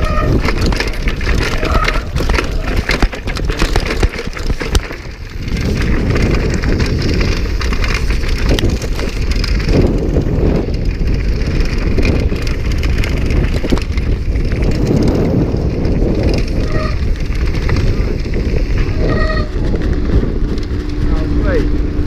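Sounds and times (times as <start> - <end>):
bike rattling over bumps: 0.0 - 22.0
wind rumble on microphone: 0.0 - 22.0.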